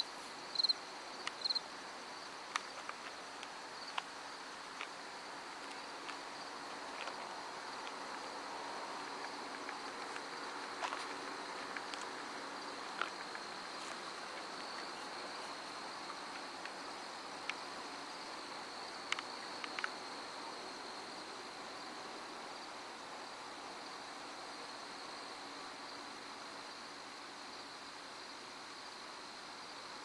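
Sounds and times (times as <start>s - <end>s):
crickets chirping: 0.0s - 30.0s
faint clicks: 19.1s - 20.0s.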